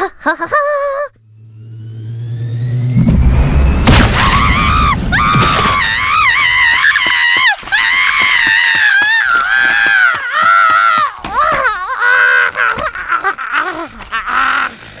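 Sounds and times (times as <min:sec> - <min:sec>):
humming rising tone: 0:01.1 - 0:07.1
low boom and crash: 0:01.2 - 0:06.9.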